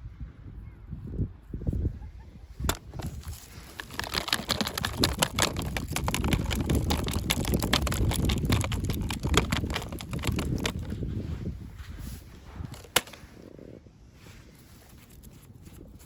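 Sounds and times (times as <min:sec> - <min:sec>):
packaging crinkling: 0:02.7 - 0:11.0.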